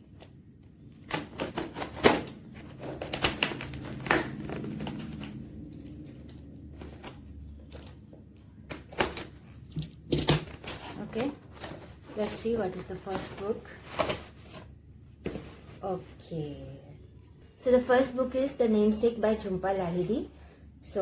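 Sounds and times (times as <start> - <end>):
packaging rustling and tearing: 0.0 - 14.8.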